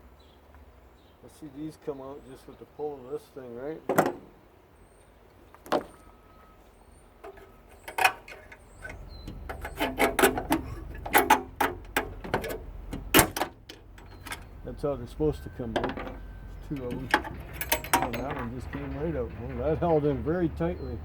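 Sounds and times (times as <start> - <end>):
metal clicks and knocks: 3.9 - 4.3, 7.2 - 14.6, 15.4 - 19.2.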